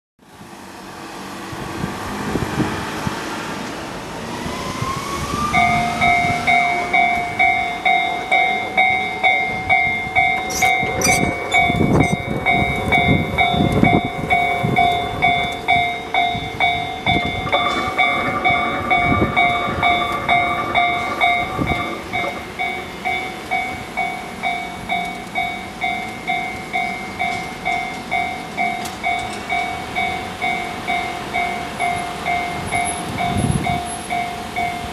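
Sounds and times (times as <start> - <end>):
level-crossing warning bell: 4.5 - 34.9.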